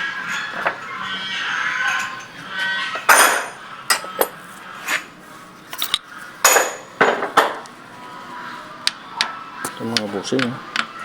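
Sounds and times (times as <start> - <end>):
metal tools clinking on metal: 1.8 - 5.0, 5.7 - 7.6.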